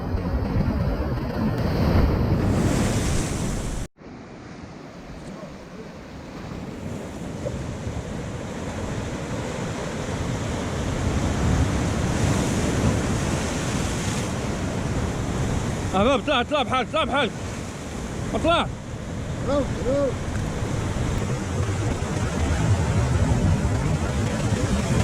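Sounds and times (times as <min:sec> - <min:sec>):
surf washing on rocky shore: 0:01.0 - 0:25.0
wind buffeting microphone: 0:17.5 - 0:25.0.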